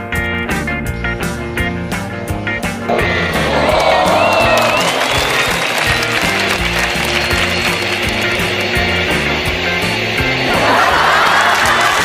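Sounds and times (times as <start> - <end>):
music with steady beat: 0.0 - 12.0.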